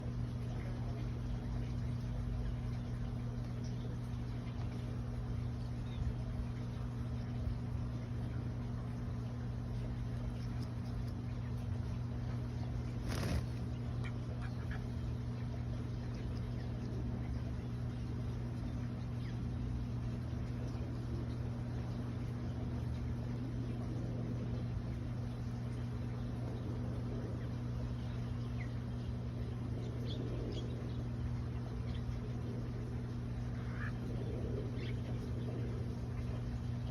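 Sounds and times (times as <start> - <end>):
low electrical hum: 0.0 - 36.9
faint duck calls: 33.5 - 34.1.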